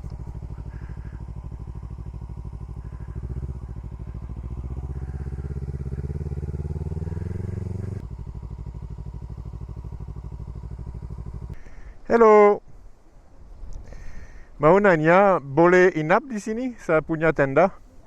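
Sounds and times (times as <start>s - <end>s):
motorcycle engine running: 0.0s - 11.8s.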